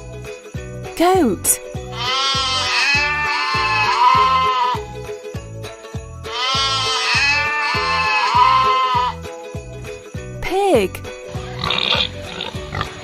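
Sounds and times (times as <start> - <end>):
goat bleating: 1.9 - 4.9, 6.3 - 9.2.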